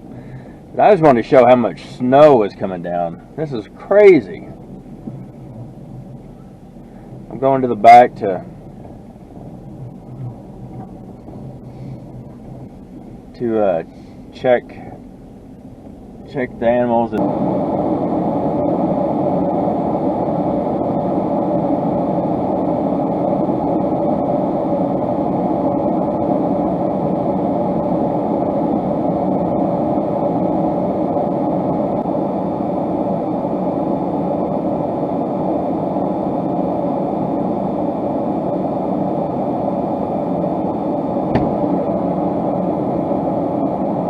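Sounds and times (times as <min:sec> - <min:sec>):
truck cab rumble while driving: 0:00.0 - 0:20.3, 0:40.7 - 0:43.9.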